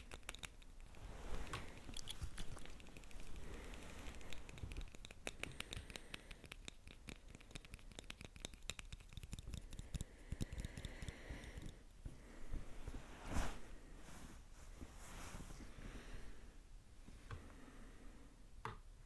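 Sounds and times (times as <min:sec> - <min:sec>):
close tapping and scratching: 0:00.0 - 0:11.8.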